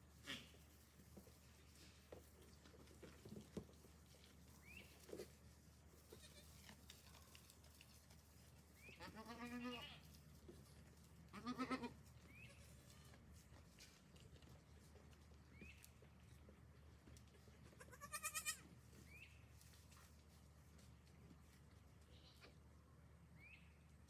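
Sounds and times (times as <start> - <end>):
goat bleating: 6.0 - 6.6, 8.9 - 10.1, 11.3 - 13.0, 17.6 - 18.8.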